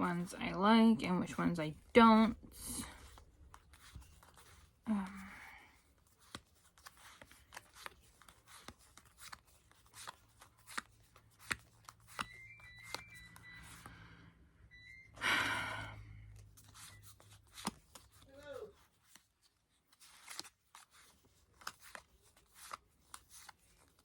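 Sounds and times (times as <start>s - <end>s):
cards clicking and tapping: 2.9s - 13.9s, 16.4s - 19.3s, 19.9s - 24.0s.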